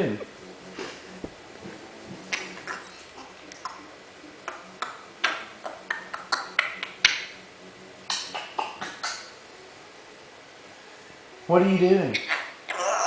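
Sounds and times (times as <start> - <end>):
parrot clicking and chirping: 4.5 - 7.4, 8.1 - 9.3.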